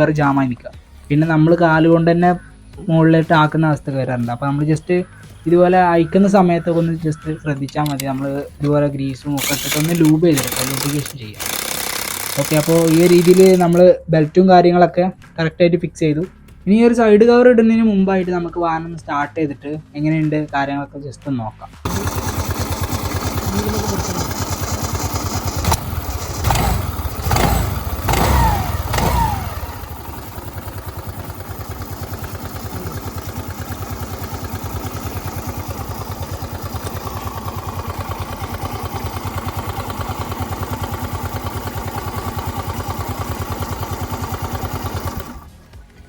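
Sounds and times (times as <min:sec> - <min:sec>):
scooter engine revving and idling: 0:05.2 - 0:13.8, 0:21.8 - 0:45.9.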